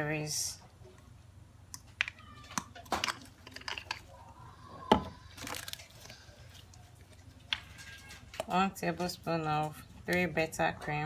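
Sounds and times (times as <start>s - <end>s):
spoon and containers clicking: 1.7s - 4.1s.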